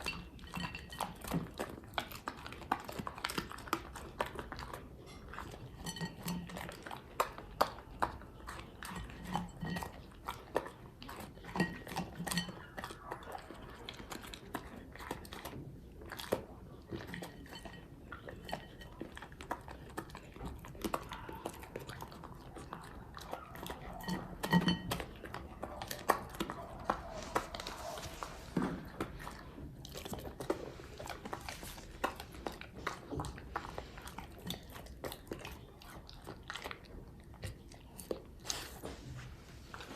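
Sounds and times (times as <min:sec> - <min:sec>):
dog chewing and crunching: 0:00.0 - 0:39.9
food bowl clattering: 0:23.8 - 0:25.4.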